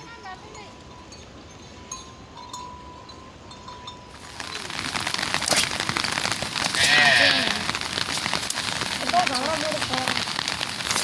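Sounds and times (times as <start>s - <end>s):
rain pattering on hard surface: 4.1s - 11.0s.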